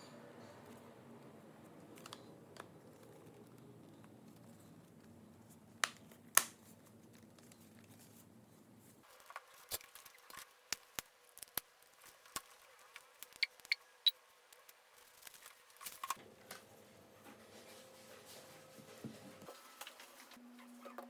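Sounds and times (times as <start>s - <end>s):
sharp clicks of small objects: 10.7s - 12.4s.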